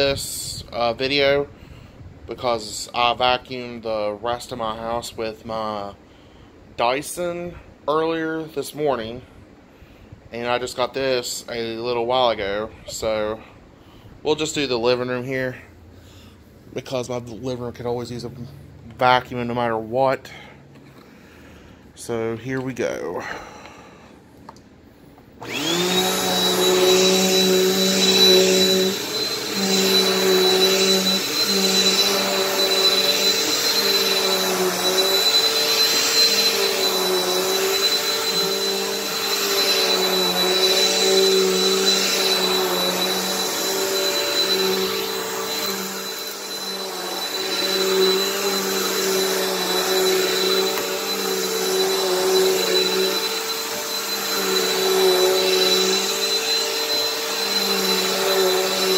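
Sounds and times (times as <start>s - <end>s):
vacuum cleaner motor whine: 25.2s - 58.9s.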